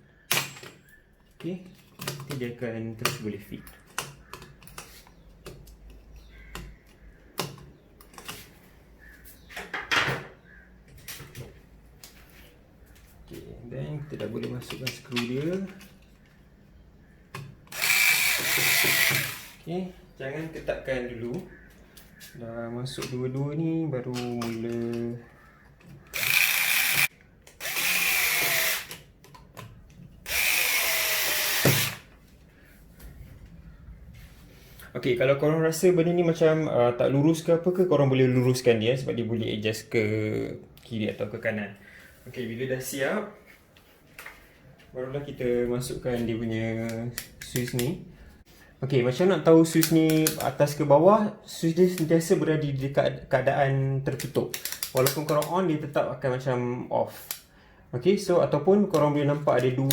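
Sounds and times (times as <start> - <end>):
hard plastic parts clicking: 17.3 - 19.6, 24.1 - 32.2, 46.8 - 48.0, 49.6 - 50.6, 54.1 - 55.6
cordless drill driving screws: 17.7 - 19.7, 26.1 - 29.0, 30.2 - 32.1.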